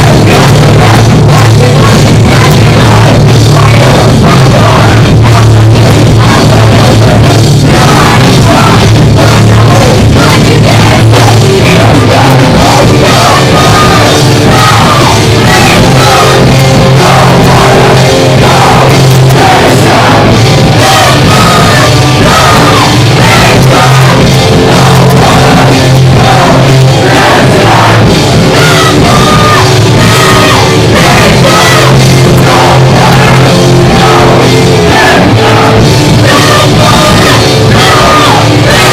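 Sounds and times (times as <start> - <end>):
distorted guitars: 0.0 - 38.9
fast drums: 0.0 - 38.9
singer shouting: 0.0 - 38.9.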